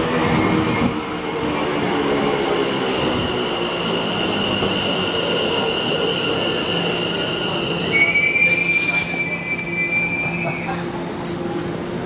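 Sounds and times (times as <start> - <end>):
train running noise: 0.0 - 12.0
high-pitched train squeal: 2.9 - 10.8.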